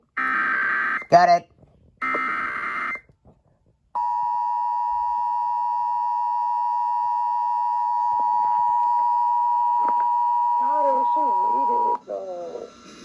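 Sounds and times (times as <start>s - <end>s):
steady two-tone attention signal: 4.0s - 12.0s.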